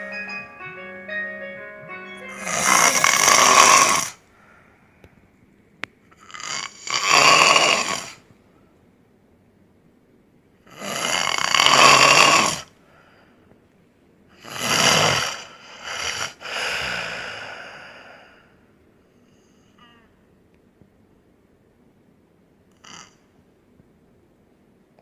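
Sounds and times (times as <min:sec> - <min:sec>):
man snoring loudly: 0:02.3 - 0:04.2, 0:06.2 - 0:08.2, 0:10.7 - 0:12.7, 0:14.4 - 0:18.0.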